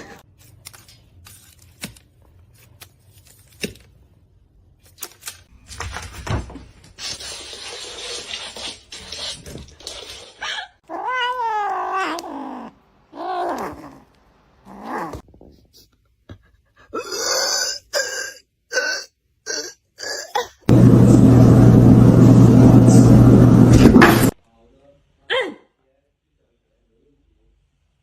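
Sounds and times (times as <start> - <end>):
cat yowling: 10.8 - 14.0.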